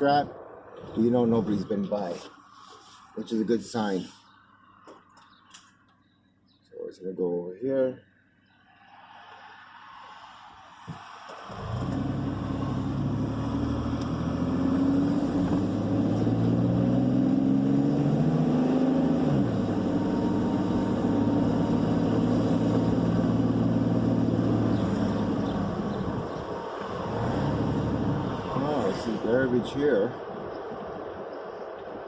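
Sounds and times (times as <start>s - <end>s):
truck engine accelerating: 11.3s - 31.7s.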